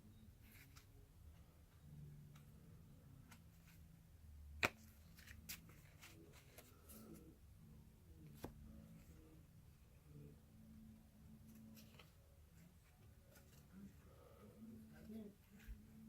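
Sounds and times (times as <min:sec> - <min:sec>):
cards rustling: 0:04.6 - 0:07.3, 0:11.3 - 0:13.9.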